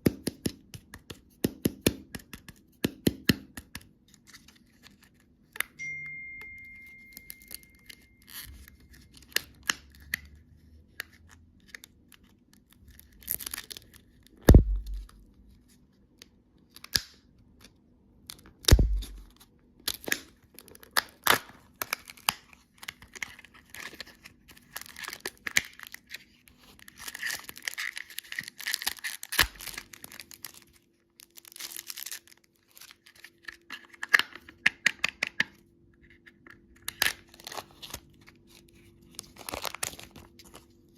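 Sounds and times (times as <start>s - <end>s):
plastic wrappers crinkling: 18.7s - 34.3s, 36.8s - 40.9s.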